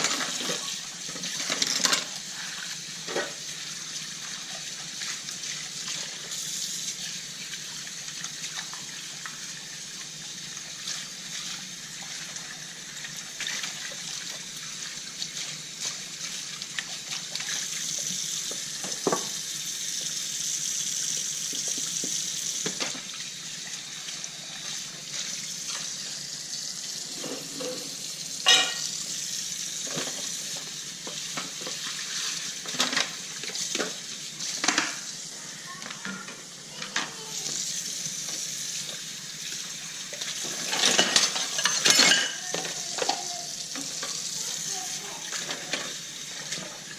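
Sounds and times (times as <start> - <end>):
tap running into sink: 18.5 - 19.4
dishes knocking and clinking: 18.8 - 19.3, 27.2 - 28.9.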